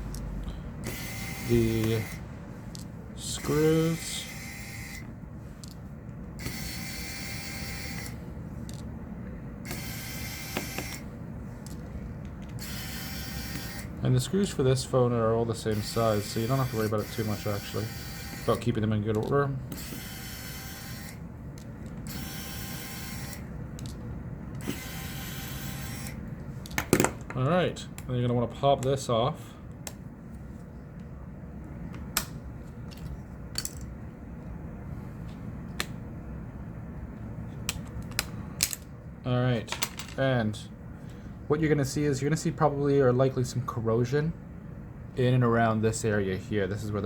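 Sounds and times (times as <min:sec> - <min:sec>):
electric screwdriver whirring: 0:00.8 - 0:02.2, 0:06.4 - 0:08.2, 0:09.7 - 0:11.0, 0:12.6 - 0:13.9, 0:15.7 - 0:18.6, 0:19.7 - 0:21.2, 0:22.1 - 0:23.4, 0:24.6 - 0:26.2.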